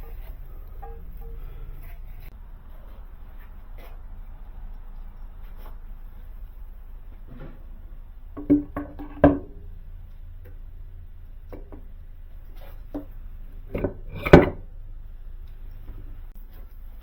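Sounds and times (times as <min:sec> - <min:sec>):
metal tools knocking and clinking: 0:00.0 - 0:01.8
steady low hum: 0:00.0 - 0:17.0.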